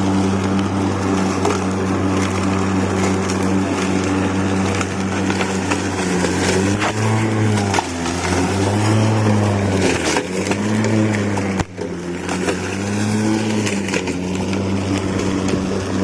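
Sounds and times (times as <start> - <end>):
lawn mower engine mowing: 0.0 - 16.0.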